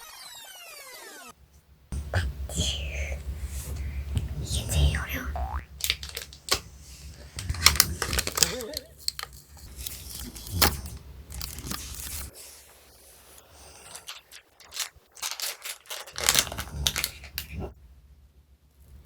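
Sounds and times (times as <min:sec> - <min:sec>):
crinkling and tearing packaging: 0:05.8 - 0:12.8, 0:13.6 - 0:17.6.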